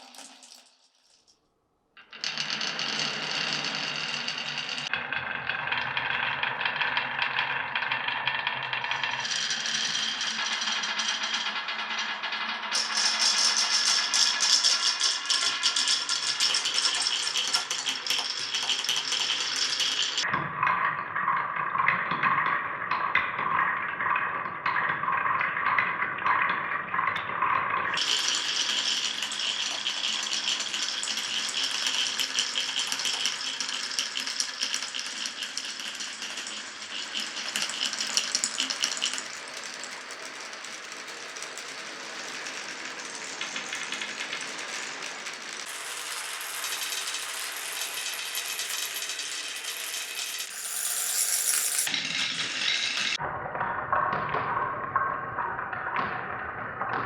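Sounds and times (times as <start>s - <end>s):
marbles rattling down tracks: 2.0s - 20.3s, 27.9s - 53.2s.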